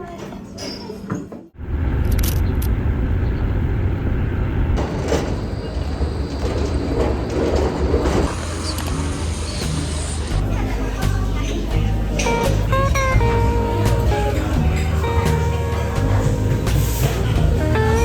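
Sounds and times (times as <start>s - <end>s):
rumble of passing vehicles: 1.6s - 10.6s.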